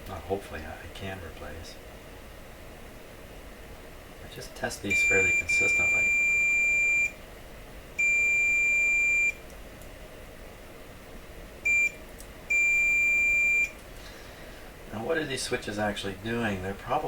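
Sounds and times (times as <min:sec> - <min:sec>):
continuity tester beeping: 0:04.9 - 0:07.2, 0:08.0 - 0:09.4, 0:11.6 - 0:13.8.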